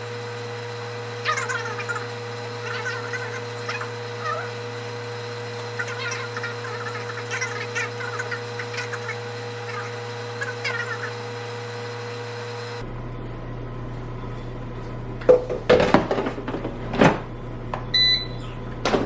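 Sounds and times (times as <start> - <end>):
kitchenware knocks and clatters: 15.3 - 17.2
appliance electronic beep: 17.9 - 18.7.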